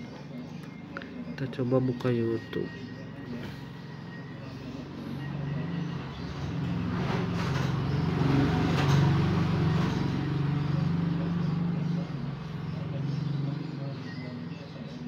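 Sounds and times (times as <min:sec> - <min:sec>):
vehicle rushing past: 0:04.8 - 0:13.6.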